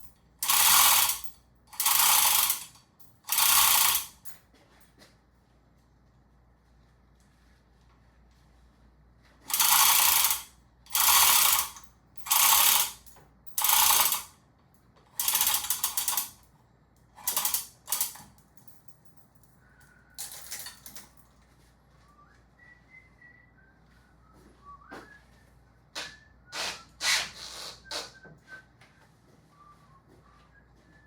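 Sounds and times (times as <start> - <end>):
ratchet strap clicking: 0.0 - 4.3, 9.5 - 14.3, 15.2 - 16.4, 17.2 - 18.3.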